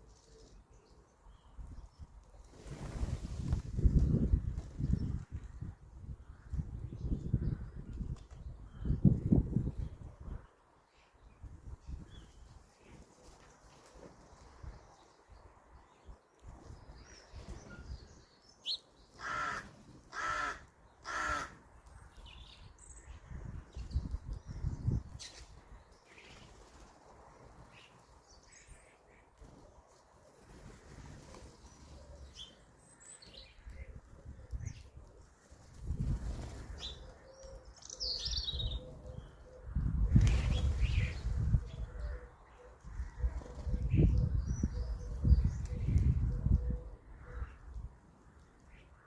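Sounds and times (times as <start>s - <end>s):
birds chirping and twittering: 0.0s - 49.0s
crow cawing: 19.2s - 21.5s.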